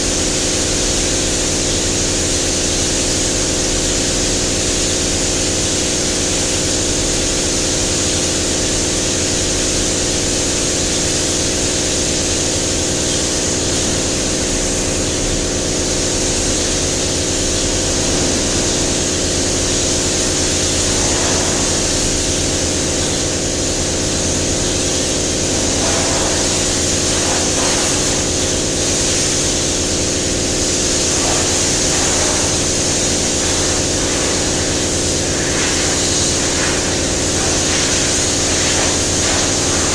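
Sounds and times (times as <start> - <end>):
air spray gun hissing: 15.8 - 39.9
machine hum: 17.2 - 39.9.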